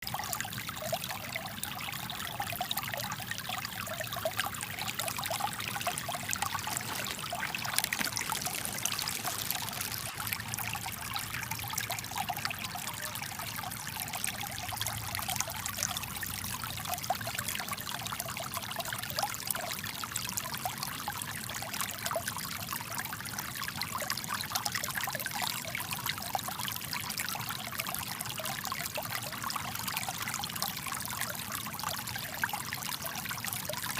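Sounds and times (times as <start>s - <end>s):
brook trickling: 0.0s - 33.9s.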